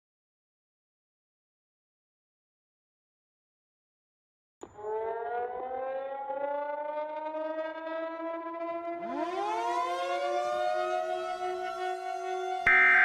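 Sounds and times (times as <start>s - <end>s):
civil defense sirens wailing: 4.8s - 13.0s
second siren rising in pitch: 12.7s - 13.0s.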